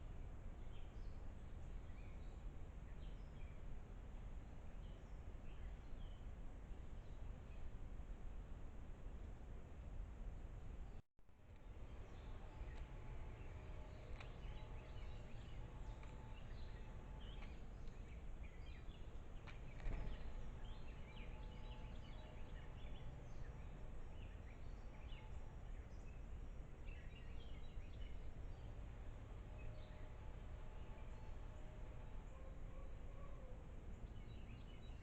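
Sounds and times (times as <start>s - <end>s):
low outdoor rumble: 0.0s - 35.0s
small birds chirping: 11.6s - 35.0s.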